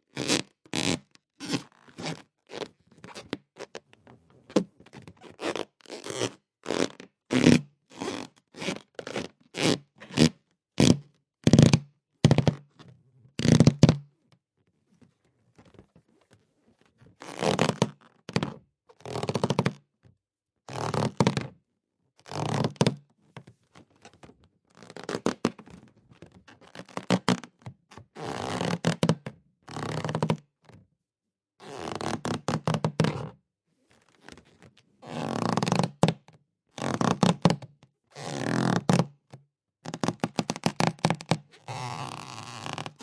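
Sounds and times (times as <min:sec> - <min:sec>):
rubber balloon squeaking: 0:05.2 - 0:11.8, 0:13.4 - 0:14.0, 0:17.2 - 0:18.0, 0:35.0 - 0:36.0, 0:36.8 - 0:37.6, 0:38.2 - 0:39.1, 0:40.0 - 0:43.0.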